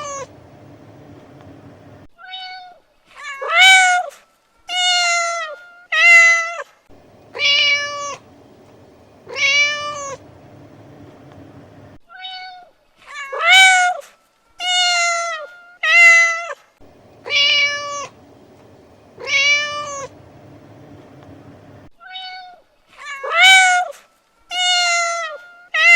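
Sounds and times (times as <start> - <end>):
cat meowing: 7.3 - 8.3, 9.3 - 10.2, 17.2 - 18.2, 19.2 - 20.2.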